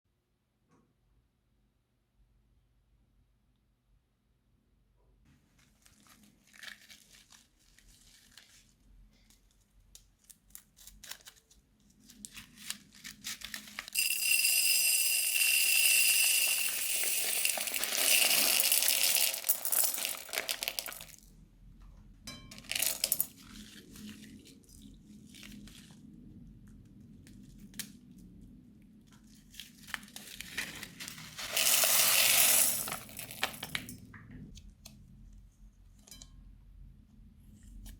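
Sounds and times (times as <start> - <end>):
plastic bags of slime crinkling: 5.6 - 14.0, 20.0 - 21.2, 29.2 - 32.0.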